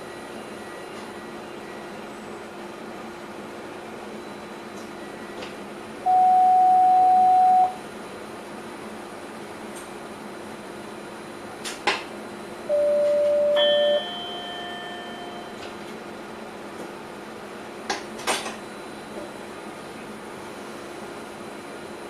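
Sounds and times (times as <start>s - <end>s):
loud beep: 6.1s - 7.8s
faint multi-tone chime: 13.0s - 15.6s.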